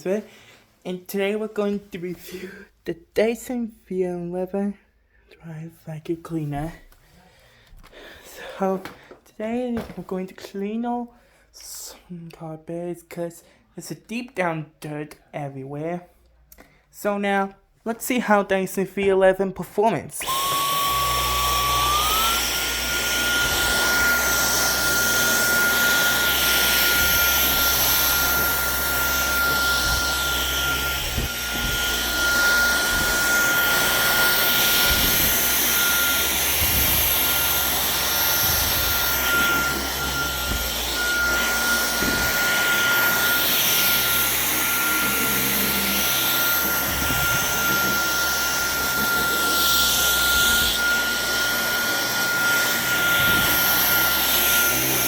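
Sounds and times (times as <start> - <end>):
vacuum motor whine: 20.2 - 55.0
vacuum suction rushing: 20.5 - 55.0.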